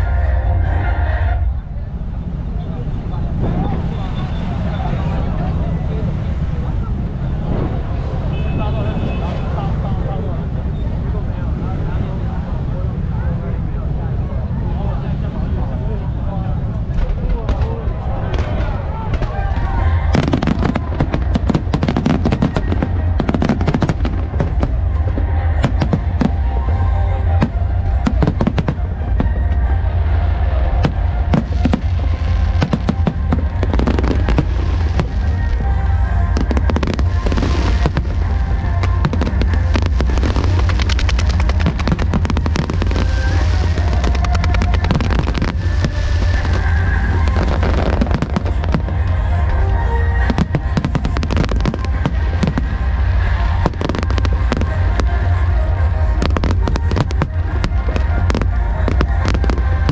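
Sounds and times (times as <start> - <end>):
fireworks bangs and crackles: 3.1 - 10.8, 16.5 - 59.9
fireworks hissing: 3.3 - 9.8, 30.3 - 59.9
music playing: 18.0 - 59.9.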